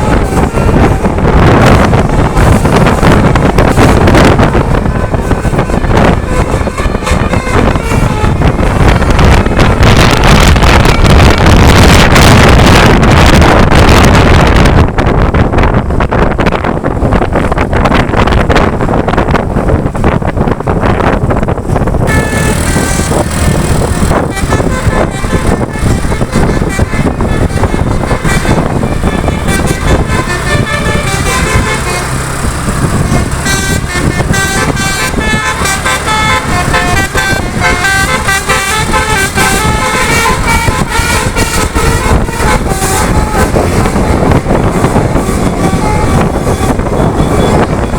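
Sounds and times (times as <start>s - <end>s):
bus horn playing a tune: 0.0s - 47.9s
road and engine noise: 0.0s - 47.9s.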